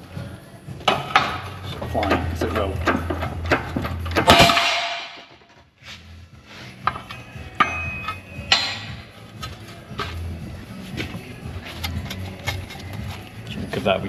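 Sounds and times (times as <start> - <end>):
loud metallic bang: 4.1 - 5.4.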